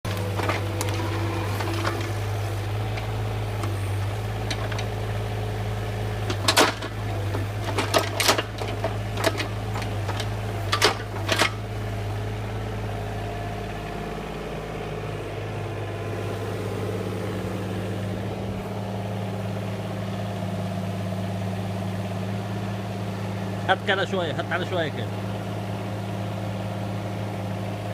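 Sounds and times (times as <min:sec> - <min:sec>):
heavy machinery engine running: 0:00.0 - 0:27.9
sharp metal clanks and knocks: 0:06.3 - 0:11.6.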